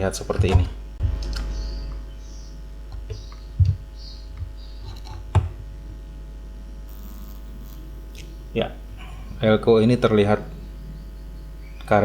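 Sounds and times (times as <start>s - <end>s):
electrical mains hum: 0.0s - 12.0s
soft low knocks: 0.4s - 6.3s.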